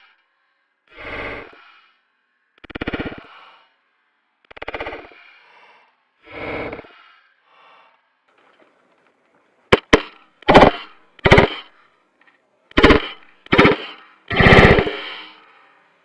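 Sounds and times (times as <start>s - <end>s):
airsoft rifle single shots: 9.7s - 11.7s, 12.7s - 15.3s.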